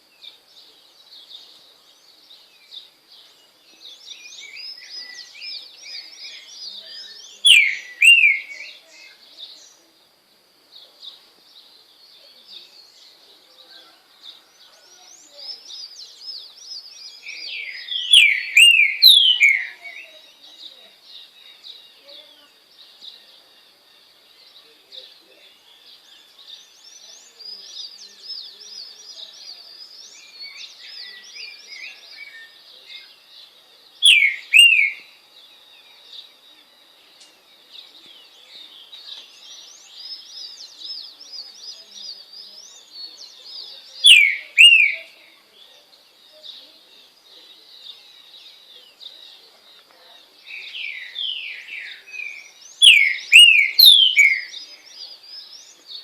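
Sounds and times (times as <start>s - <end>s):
small birds chirping: 0.0s - 56.0s
bird singing downward whistles: 4.1s - 8.8s, 17.2s - 19.8s, 34.1s - 35.1s, 44.1s - 45.1s, 50.6s - 54.6s.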